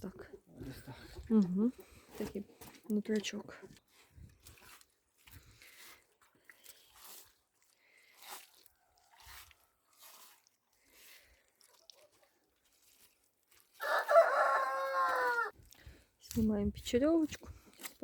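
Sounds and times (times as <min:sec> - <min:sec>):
rooster crowing: 0:13.8 - 0:15.5.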